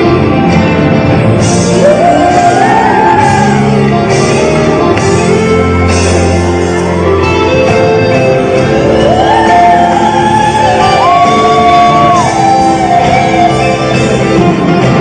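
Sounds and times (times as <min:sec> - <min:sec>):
live pop band: 0:00.0 - 0:15.0
woman singing: 0:01.8 - 0:03.7.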